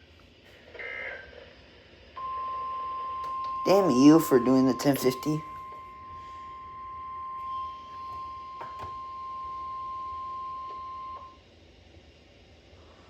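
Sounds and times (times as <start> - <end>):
steady alarm beep: 2.2 - 11.4.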